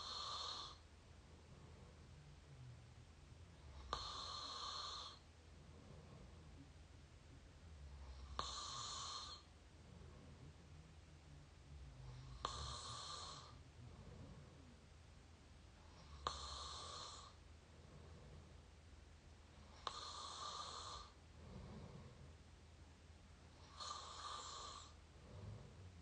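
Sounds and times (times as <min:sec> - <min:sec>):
person snoring: 0:00.0 - 0:00.8, 0:03.6 - 0:05.2, 0:07.8 - 0:09.5, 0:12.0 - 0:14.7, 0:15.9 - 0:17.4, 0:19.7 - 0:22.3, 0:23.6 - 0:26.0.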